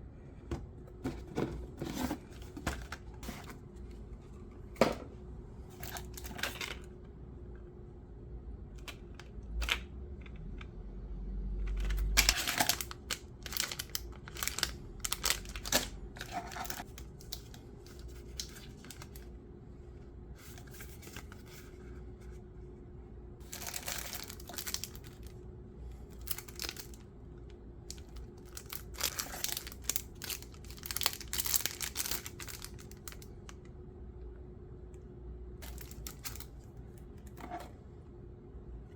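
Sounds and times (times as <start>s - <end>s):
faint steady hum: 0.0s - 38.9s
packaging torn and crinkled: 11.8s - 19.3s, 23.4s - 25.4s, 26.2s - 27.0s, 27.9s - 33.3s, 35.6s - 36.5s.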